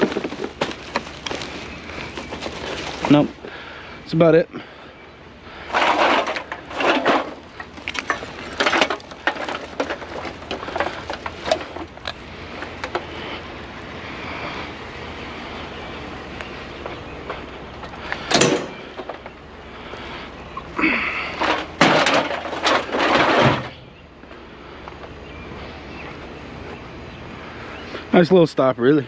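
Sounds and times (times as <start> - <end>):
steady low rumble: 0.0 - 28.8
scrap metal knocks and clanks: 5.6 - 13.2, 17.8 - 19.4, 21.3 - 23.8.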